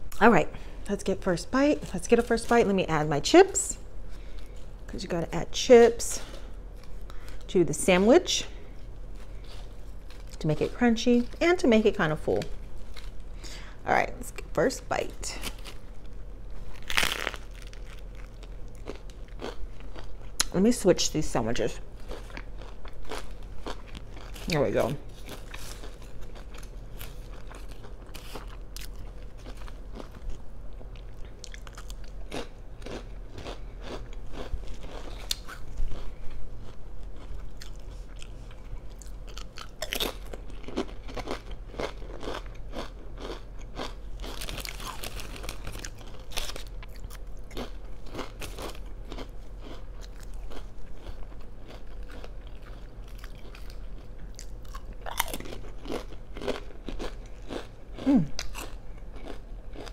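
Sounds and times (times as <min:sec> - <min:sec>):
crunchy biting and chewing: 0:15.4 - 0:20.5, 0:22.0 - 0:59.9.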